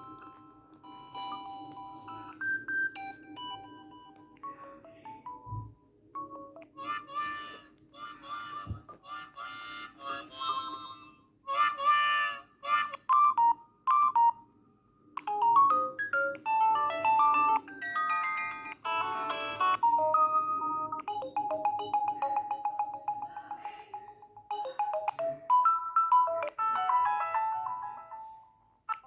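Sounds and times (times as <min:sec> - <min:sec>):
beeping electronic ringtone melody: 0:00.0 - 0:05.4, 0:15.3 - 0:28.2
phone ringtone chord bursts: 0:15.3 - 0:23.6, 0:24.4 - 0:27.6.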